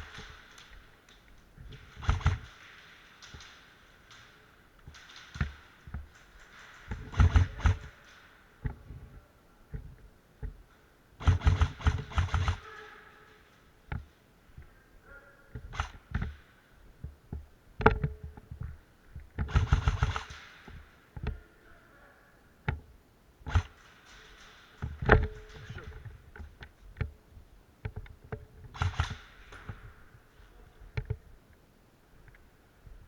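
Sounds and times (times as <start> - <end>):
airsoft guns firing: 0.0 - 9.0, 11.2 - 14.8, 15.5 - 17.0, 19.4 - 21.4, 23.5 - 26.7, 28.7 - 30.4.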